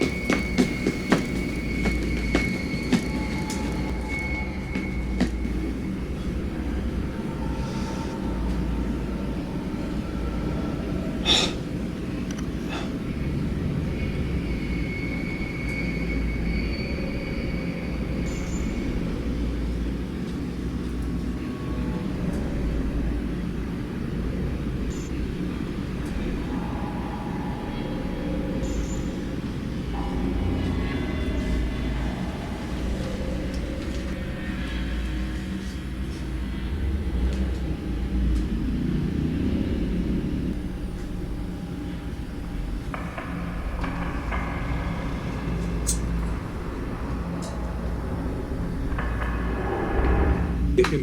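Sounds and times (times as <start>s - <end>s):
faint high-pitched squeals: 0.0s - 38.4s
low mechanical rumble: 0.0s - 51.0s.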